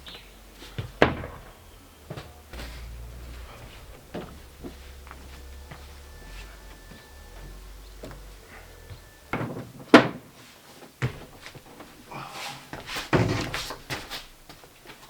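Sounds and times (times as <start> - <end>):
hollow wooden knocks: 12.8 - 14.3
plywood sheet scraping slide: 12.9 - 14.3.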